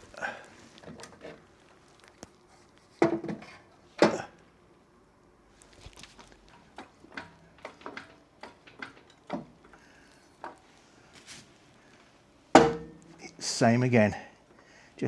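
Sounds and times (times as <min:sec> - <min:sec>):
tools and metal parts clicking: 0:06.6 - 0:09.8.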